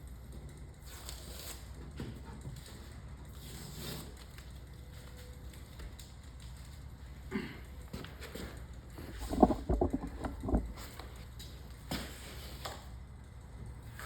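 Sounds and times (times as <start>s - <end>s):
low steady hum: 8.9s - 11.0s
vinyl rustling and rubbing by hand: 9.0s - 11.0s.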